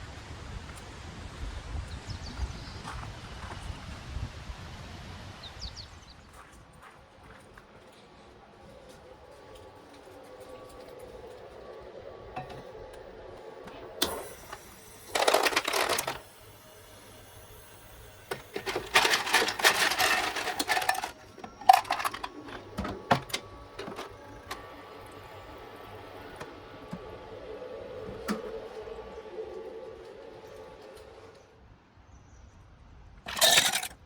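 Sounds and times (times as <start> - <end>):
small hard objects clinking: 18.5 - 22.7, 33.3 - 34.0.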